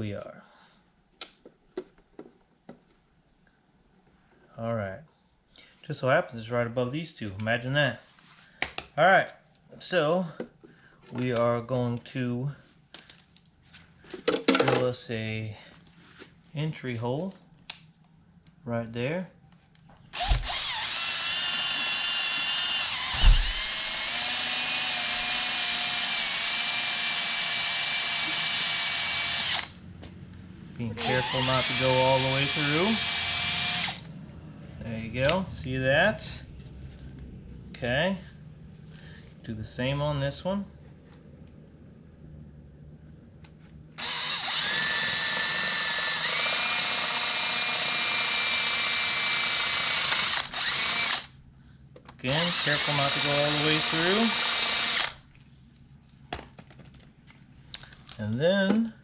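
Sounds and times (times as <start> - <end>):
electric drill whining: 20.1 - 29.8, 31.0 - 34.1, 44.0 - 51.4, 52.3 - 55.2.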